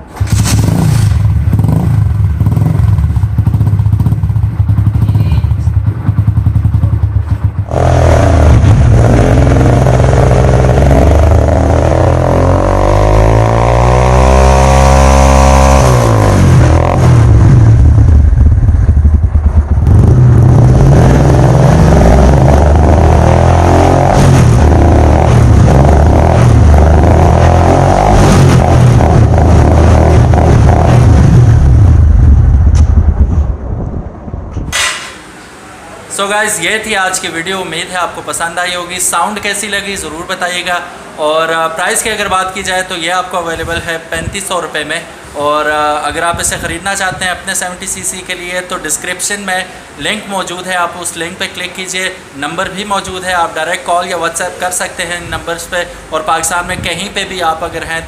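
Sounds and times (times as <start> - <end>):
motorcycle engine revving: 0.0 - 33.5.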